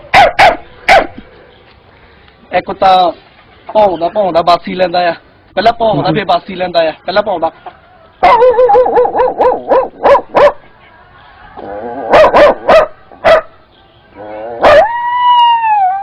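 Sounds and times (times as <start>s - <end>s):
boy imitating dog barks: 14.6s - 16.0s
boy whining like a dog: 14.6s - 16.0s.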